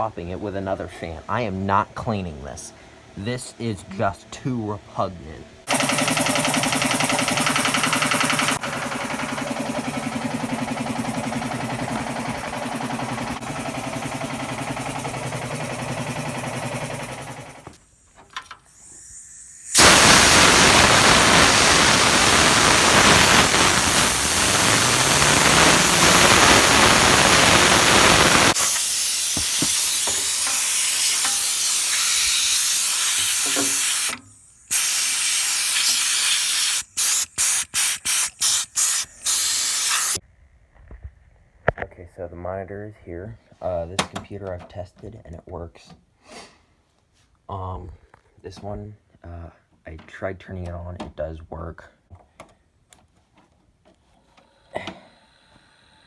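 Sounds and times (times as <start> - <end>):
compressed air hissing: 5.7 - 40.2
steady pitched hum: 18.6 - 30.5.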